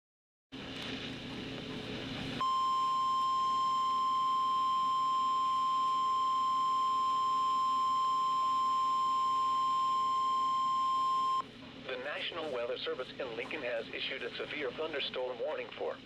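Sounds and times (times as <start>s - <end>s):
steady warning alarm tone: 2.4s - 11.4s.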